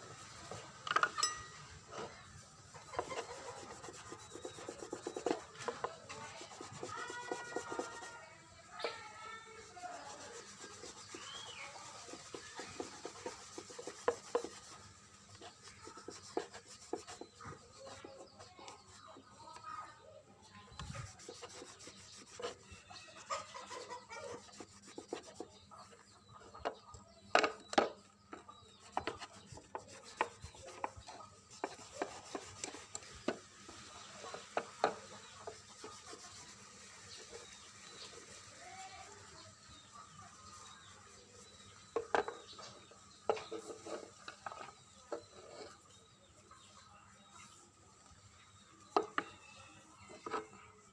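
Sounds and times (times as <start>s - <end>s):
hand rubbing and scraping object: 2.8s - 8.3s, 8.9s - 19.3s, 20.8s - 26.8s, 27.4s - 38.9s.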